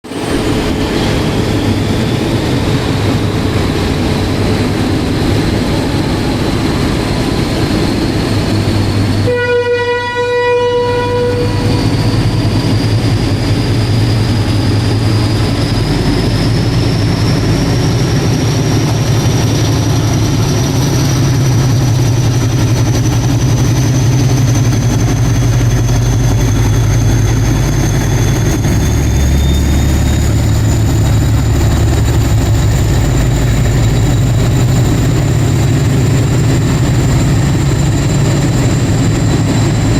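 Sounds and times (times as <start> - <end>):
diesel locomotive running: 0.0 - 39.9
train horn: 9.2 - 11.9.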